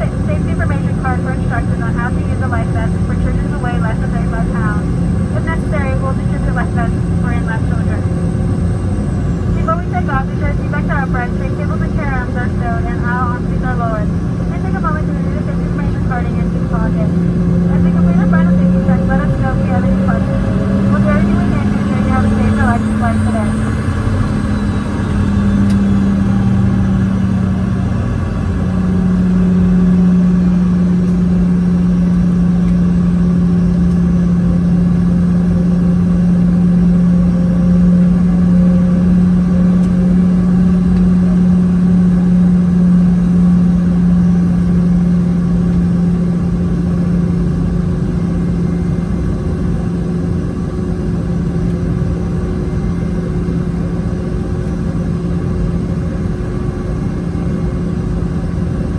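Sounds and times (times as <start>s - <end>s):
jet engines droning: 0.0s - 58.9s.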